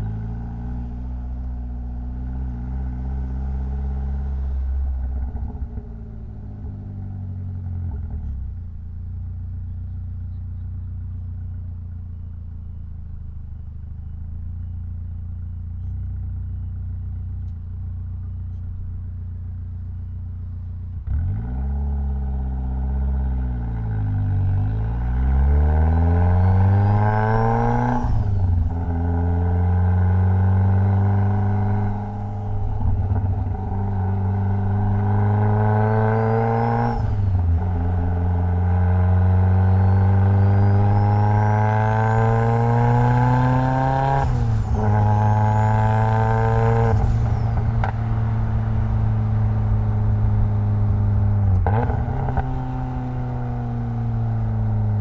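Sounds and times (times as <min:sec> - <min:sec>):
car engine accelerating: 0:21.0 - 0:55.0.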